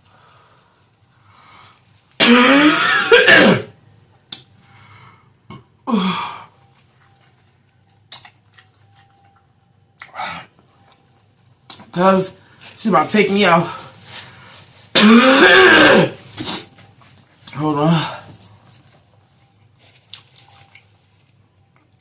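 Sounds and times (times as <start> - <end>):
woman clearing her throat: 2.2 - 3.7, 15.0 - 16.2
woman coughing: 2.2 - 3.7, 15.0 - 16.2.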